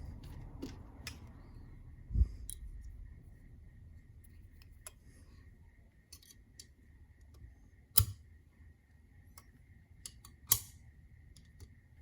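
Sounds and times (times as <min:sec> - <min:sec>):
faint high hum: 0:00.0 - 0:12.0
small metal clicks and taps: 0:06.1 - 0:08.2, 0:09.4 - 0:11.8.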